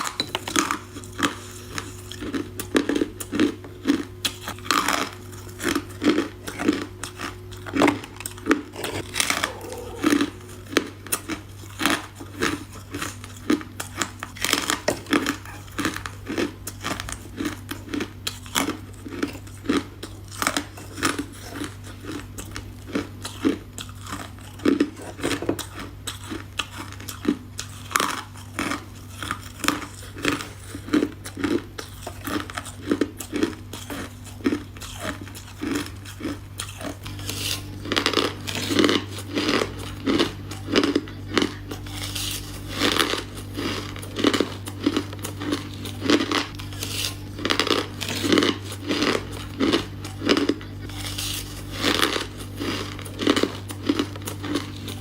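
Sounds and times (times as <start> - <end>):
ice crunching while chewed: 0.0 - 55.0
low hum: 8.6 - 11.4.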